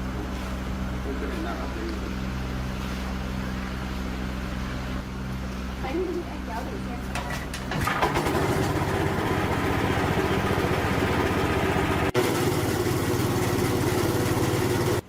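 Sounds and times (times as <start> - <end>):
motorcycle engine revving: 7.7 - 15.0.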